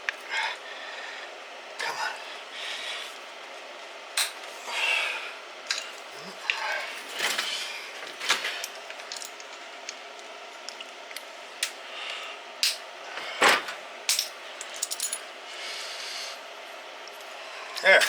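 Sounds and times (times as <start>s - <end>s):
metal tools clinking on engine: 5.7s - 9.6s, 12.6s - 15.3s.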